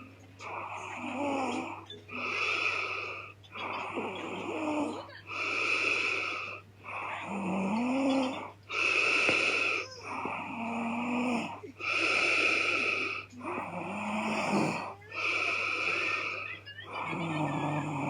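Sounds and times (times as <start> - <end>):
woman snoring: 0.0 - 18.0.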